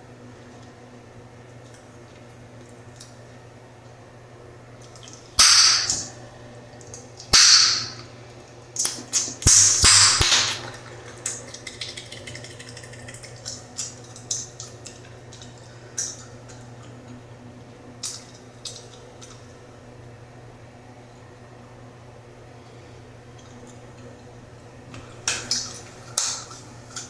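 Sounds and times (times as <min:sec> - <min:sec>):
wet chewing clicks: 0:11.2 - 0:16.3.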